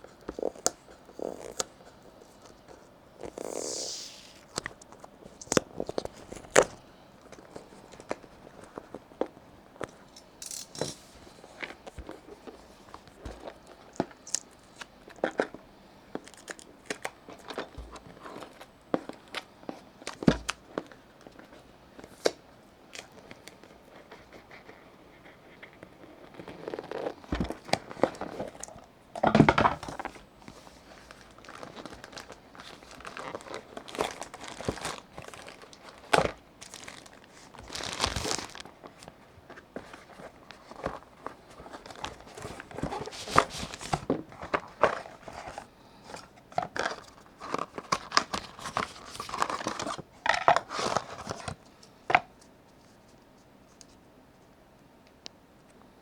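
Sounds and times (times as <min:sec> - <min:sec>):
packaging crinkling: 0:25.6 - 0:28.9, 0:29.8 - 0:51.7.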